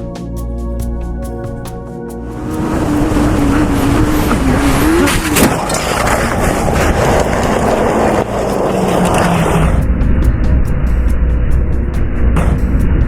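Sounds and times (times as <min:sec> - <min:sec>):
wind rush: 0:02.1 - 0:13.0
motorcycle engine at speed: 0:02.3 - 0:11.7
sharp crack: 0:04.3 - 0:09.9.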